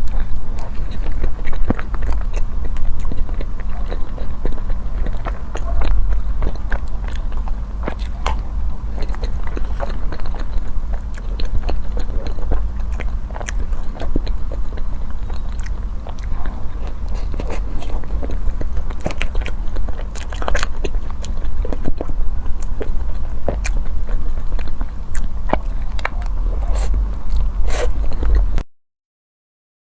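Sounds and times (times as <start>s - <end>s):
person chewing food: 0.0s - 28.6s
steady low hum: 0.0s - 28.7s.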